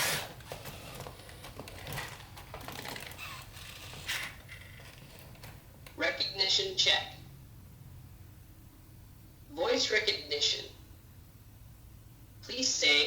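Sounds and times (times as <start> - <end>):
servo motors clicking and whirring: 3.0 - 4.4.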